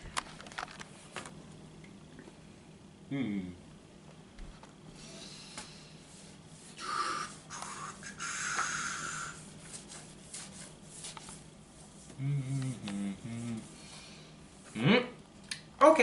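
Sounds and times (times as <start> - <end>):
countertop being scrubbed: 6.0 - 12.2.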